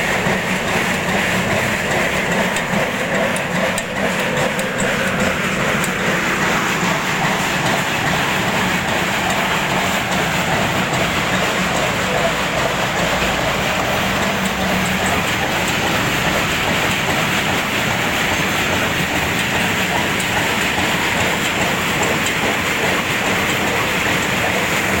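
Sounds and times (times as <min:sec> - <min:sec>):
sorting machine clattering: 0:00.0 - 0:25.0.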